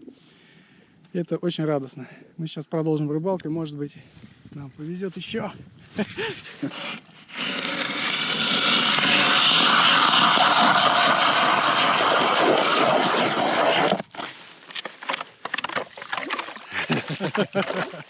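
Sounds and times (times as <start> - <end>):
ice auger grinding: 6.0 - 18.0.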